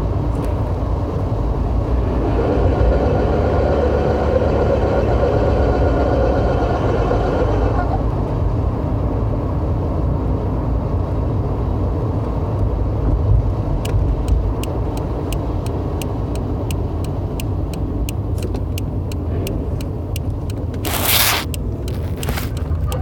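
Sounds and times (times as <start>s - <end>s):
car driving rumble: 5.3s - 23.0s
regular sharp ticking: 13.9s - 23.0s.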